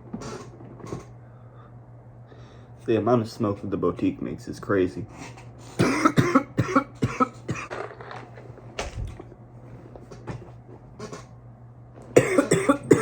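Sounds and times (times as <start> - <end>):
man coughing: 5.7 - 7.8, 12.2 - 13.0.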